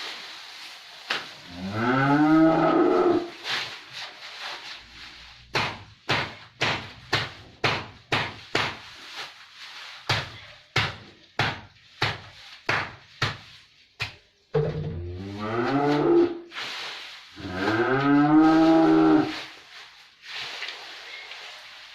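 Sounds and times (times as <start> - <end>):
cow mooing: 1.6 - 3.3, 15.0 - 16.4
grass being chopped: 5.5 - 9.3, 10.0 - 14.2.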